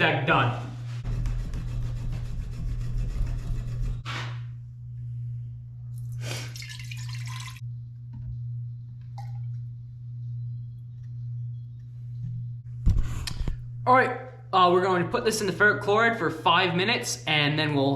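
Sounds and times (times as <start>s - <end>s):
steady low hum: 0.0s - 17.9s
sandpaper rubbing on metal: 0.9s - 4.4s.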